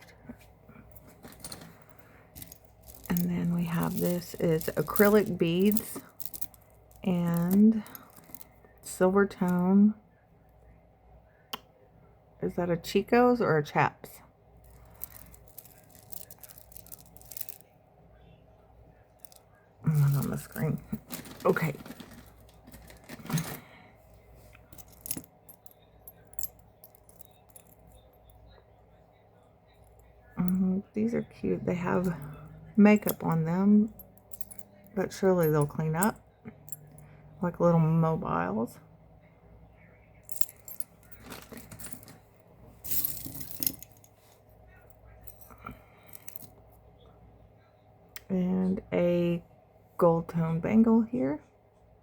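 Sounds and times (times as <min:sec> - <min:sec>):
jewelry clinking and jingling: 0:00.1 - 0:09.7, 0:14.6 - 0:17.7, 0:19.1 - 0:28.6, 0:29.7 - 0:38.4, 0:40.2 - 0:46.7.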